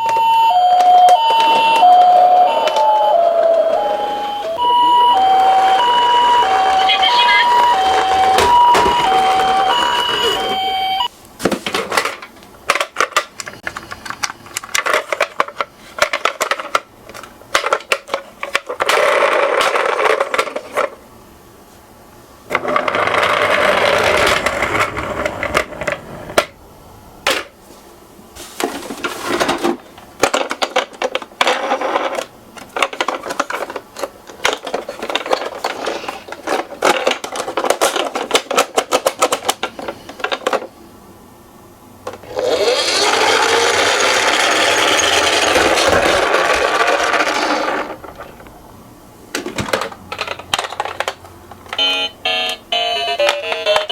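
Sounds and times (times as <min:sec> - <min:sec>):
toy cars rattling down slope: 0:22.5 - 0:26.0, 0:42.1 - 0:48.5.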